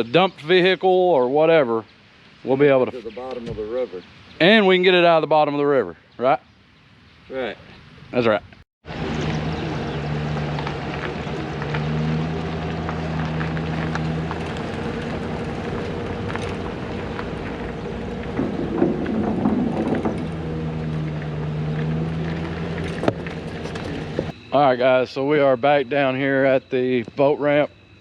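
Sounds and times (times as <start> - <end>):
engine running: 8.9 - 24.8.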